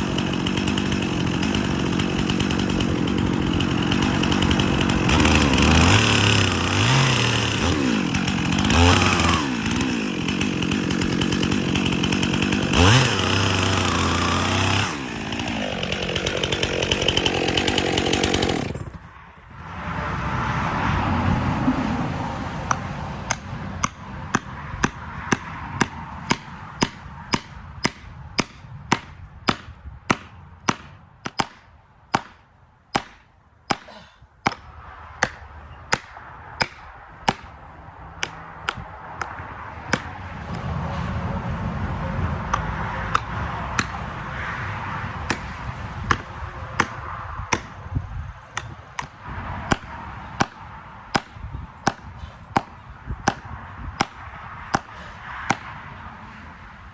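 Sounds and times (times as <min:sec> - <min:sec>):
hammer striking wedge: 0:22.7 - 0:37.5, 0:38.2 - 0:40.1, 0:42.5 - 0:44.0, 0:46.1 - 0:47.8, 0:50.4 - 0:54.9.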